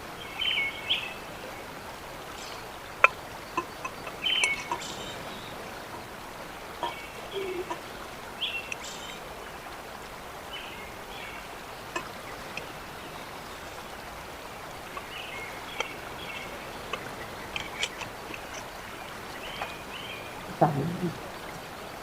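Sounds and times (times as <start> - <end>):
flowing river water: 0.0 - 22.0
small birds chirping: 0.0 - 22.0
light clicks: 16.8 - 19.8.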